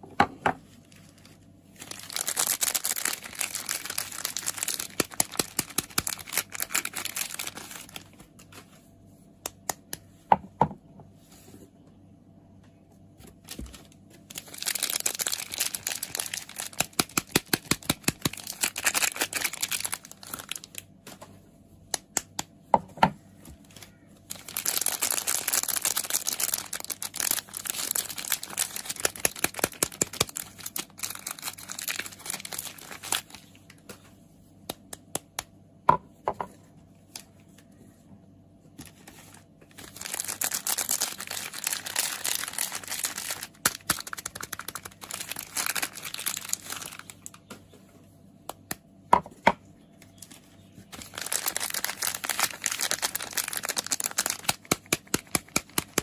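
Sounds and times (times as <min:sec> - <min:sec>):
soap packaging crinkling: 0:00.7 - 0:08.8, 0:13.3 - 0:21.2, 0:23.5 - 0:34.0, 0:38.8 - 0:47.5, 0:50.1 - 0:56.0.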